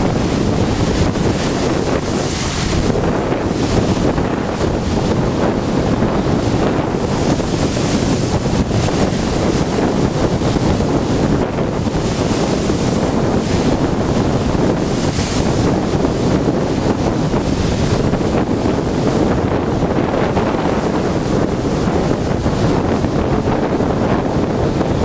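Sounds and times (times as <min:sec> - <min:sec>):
storm waves crashing: 0:00.0 - 0:25.0
wind buffeting microphone: 0:00.0 - 0:25.0.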